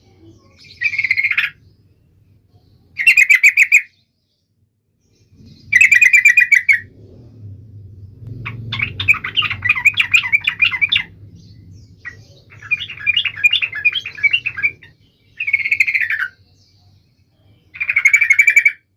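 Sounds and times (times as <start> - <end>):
bulbul singing: 0.1 - 18.9
faint low hum: 4.0 - 18.4.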